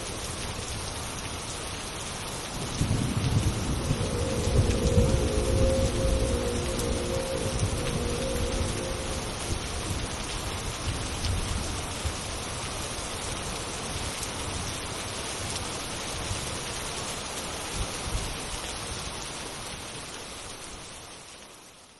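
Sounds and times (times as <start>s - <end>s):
steady rain: 0.0s - 21.9s
low rumble: 2.7s - 10.6s
synthesized train horn chord: 3.2s - 10.3s.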